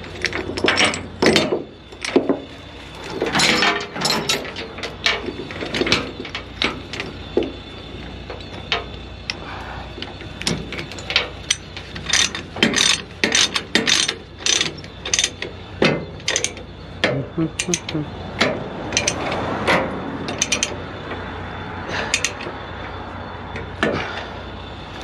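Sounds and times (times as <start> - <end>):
metal gear clicking and clanking: 0.0 - 7.6, 10.1 - 20.8
low steady hum: 0.0 - 25.0.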